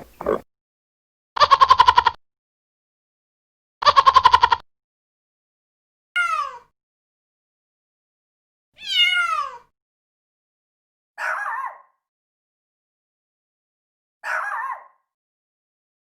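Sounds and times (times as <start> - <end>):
rough animal call: 0.0 - 0.4
cat meowing: 8.8 - 9.7.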